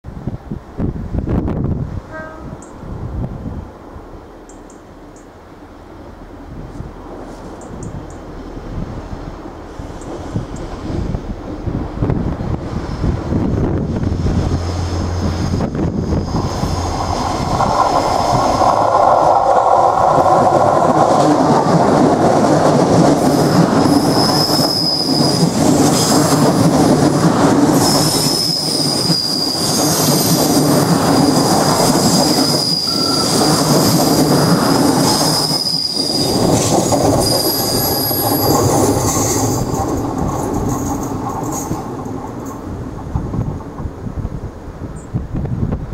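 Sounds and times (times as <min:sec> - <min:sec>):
train rumbling past: 0:00.1 - 0:45.9
high-pitched wheel squeal: 0:23.8 - 0:25.8, 0:27.8 - 0:39.7.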